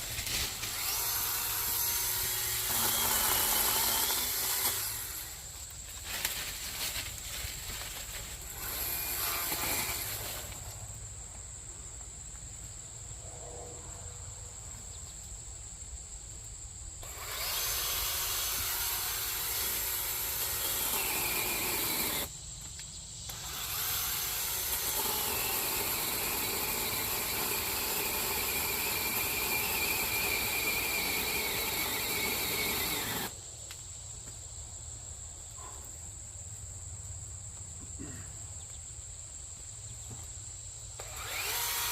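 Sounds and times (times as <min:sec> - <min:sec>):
chainsaw cutting brush: 0:00.0 - 0:10.8, 0:17.0 - 0:22.3, 0:23.3 - 0:33.4, 0:41.0 - 0:41.9
high insect trill: 0:00.0 - 0:41.9.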